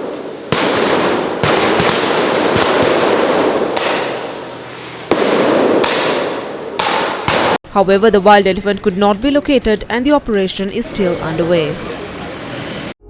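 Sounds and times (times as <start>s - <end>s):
firecracker bangs: 0.0s - 7.6s.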